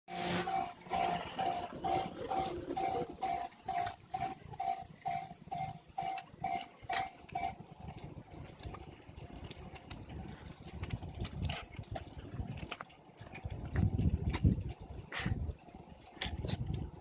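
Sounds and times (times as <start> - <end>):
background traffic rumble: 0.1 - 17.0
level crossing alarm ringing: 0.2 - 8.8.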